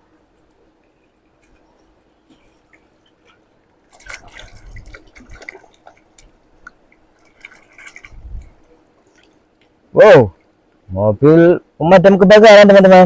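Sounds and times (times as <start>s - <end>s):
water drips and splashes: 2.4s - 9.8s.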